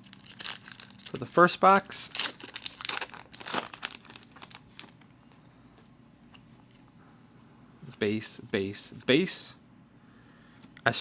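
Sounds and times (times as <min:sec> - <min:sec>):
foil wrapper tearing and crinkling: 0:00.0 - 0:05.0.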